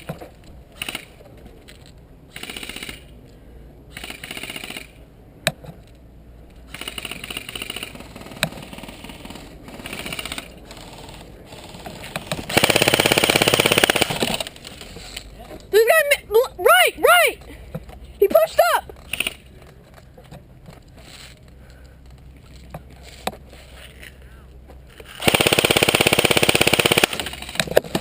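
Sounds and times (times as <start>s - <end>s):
airsoft guns firing on full auto: 3.9s - 5.0s, 6.7s - 10.5s, 12.2s - 14.5s, 25.2s - 27.8s.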